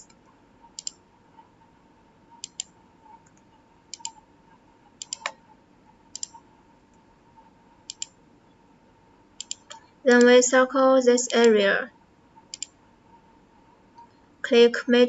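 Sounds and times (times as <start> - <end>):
computer mouse buttons clicking: 0.8 - 1.0, 2.4 - 4.2, 5.0 - 5.4, 6.1 - 6.4, 7.9 - 8.2, 9.4 - 10.3, 12.5 - 12.7.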